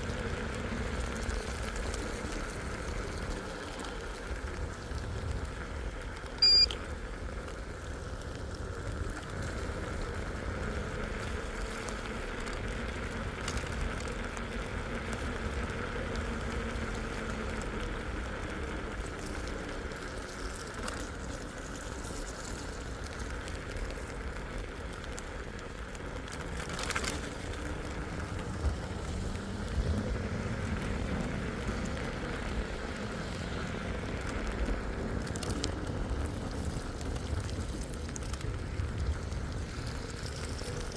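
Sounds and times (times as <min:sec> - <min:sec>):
low vehicle rumble: 0:00.0 - 0:40.9
rain and tyre spray: 0:00.0 - 0:40.9
short sharp high tone: 0:06.4 - 0:06.8.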